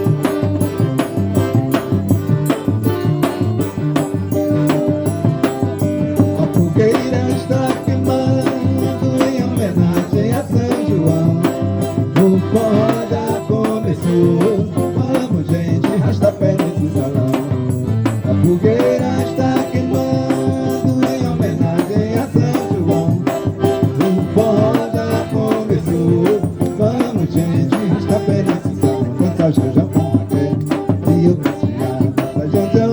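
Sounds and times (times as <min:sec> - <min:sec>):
band melody of held notes: 0:00.0 - 0:32.9
quick steady percussion beat: 0:00.0 - 0:32.9.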